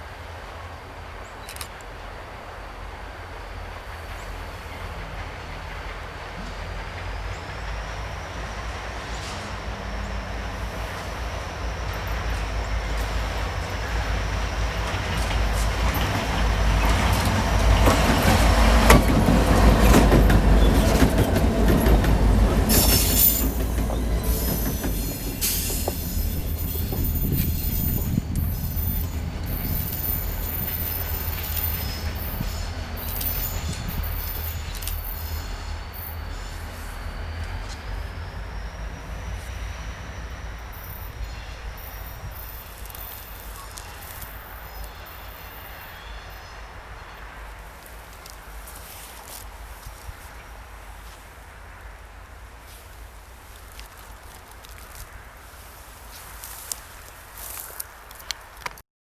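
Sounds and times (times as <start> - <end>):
train rumbling past: 0.0 - 58.7
train wheels squealing: 3.5 - 47.4.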